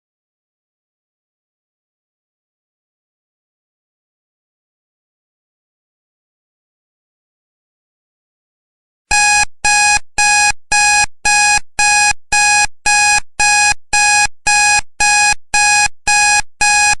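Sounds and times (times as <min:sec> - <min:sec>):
timer alarm beeping: 0:09.1 - 0:17.0.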